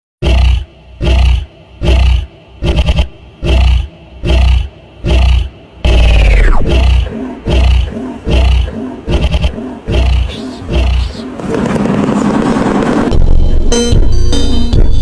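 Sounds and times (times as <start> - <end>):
animal roaring grunts: 0.2 - 11.4.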